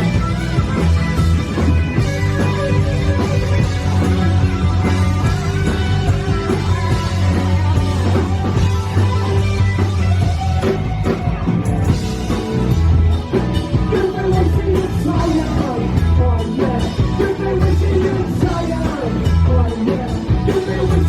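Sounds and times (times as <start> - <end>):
bass guitar: 0.0 - 21.0
drums: 0.0 - 21.0
electric guitar: 0.0 - 21.0
person singing: 13.8 - 21.0.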